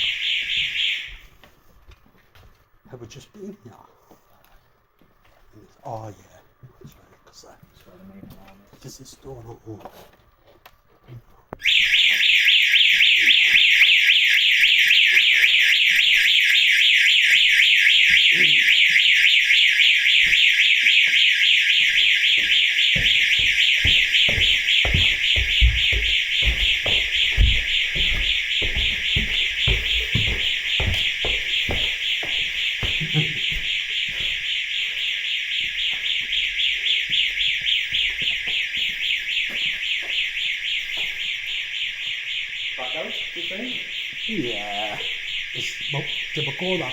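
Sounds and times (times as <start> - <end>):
intruder alarm warbling: 0.0 - 1.3, 11.6 - 46.9
low thumps: 21.8 - 34.2.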